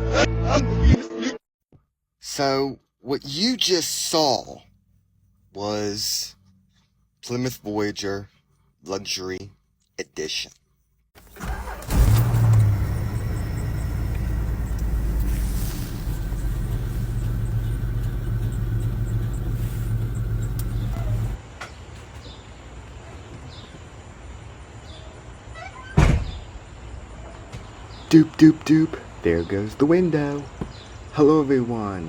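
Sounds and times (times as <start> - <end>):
car engine running: 11.2 - 21.4.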